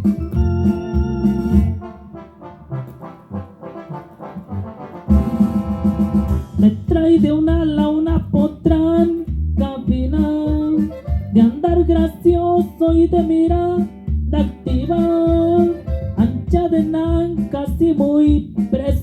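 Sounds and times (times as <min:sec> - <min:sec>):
song with brass and guitar: 0:00.0 - 0:08.6, 0:09.7 - 0:19.0
loud brass chord: 0:01.2 - 0:06.7
person singing: 0:06.6 - 0:19.0.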